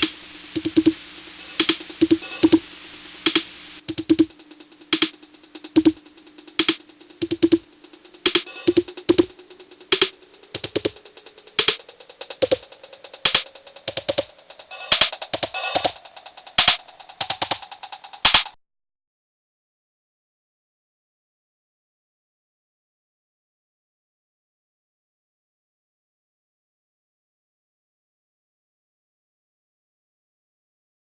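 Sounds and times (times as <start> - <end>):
drum machine beat: 0.0 - 18.6.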